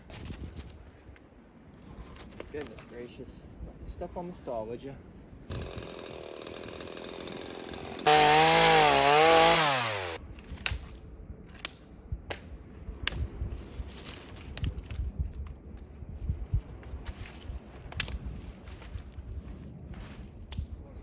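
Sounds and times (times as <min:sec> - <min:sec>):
chainsaw idling and revving: 0:05.5 - 0:10.2.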